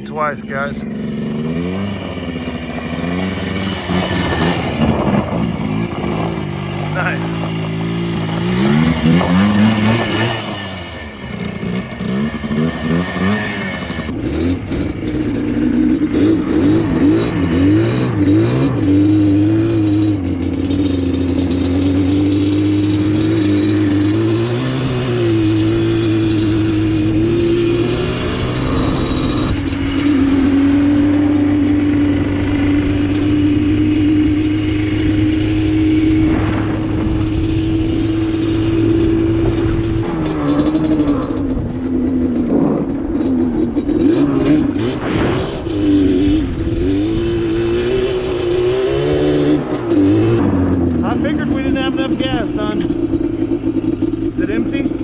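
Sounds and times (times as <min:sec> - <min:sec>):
atv engine revving: 0:00.0 - 0:55.0.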